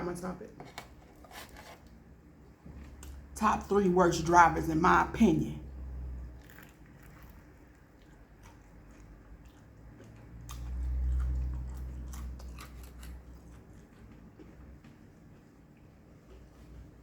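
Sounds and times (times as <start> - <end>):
person chewing food: 6.3 - 17.0.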